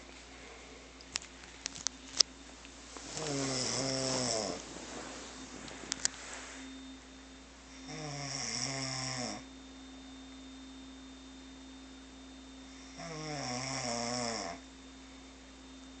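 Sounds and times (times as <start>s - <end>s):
steady low hum: 0.0s - 16.0s
person snoring: 3.1s - 4.6s, 7.7s - 9.5s, 12.7s - 14.6s.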